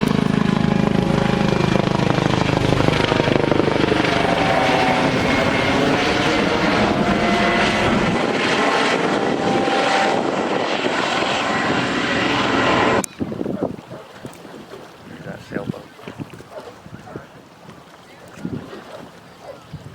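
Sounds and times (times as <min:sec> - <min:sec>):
helicopter rotor chop: 0:00.0 - 0:13.1
turbine whine: 0:00.0 - 0:13.1.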